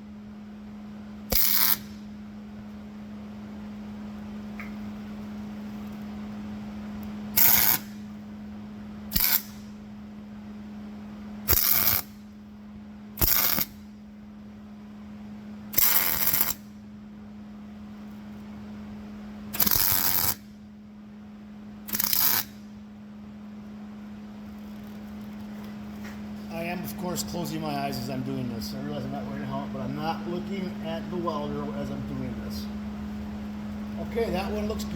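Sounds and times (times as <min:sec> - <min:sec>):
steady low hum: 0:00.0 - 0:34.9
arc welder crackling: 0:01.2 - 0:02.3, 0:04.5 - 0:08.4, 0:09.0 - 0:10.0, 0:11.4 - 0:14.1, 0:15.7 - 0:16.8, 0:19.4 - 0:20.7, 0:21.8 - 0:22.8, 0:33.0 - 0:34.9.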